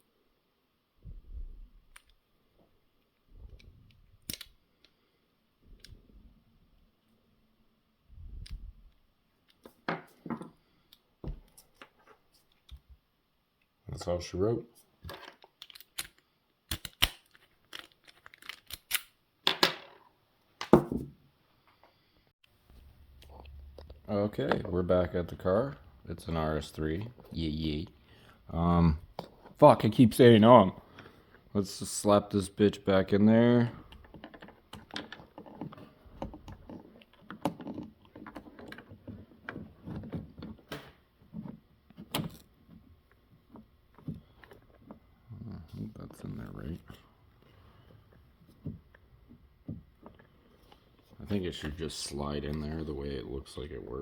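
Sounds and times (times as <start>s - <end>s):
clicks of metal lock parts: 4.2s - 4.6s, 15.3s - 19.2s.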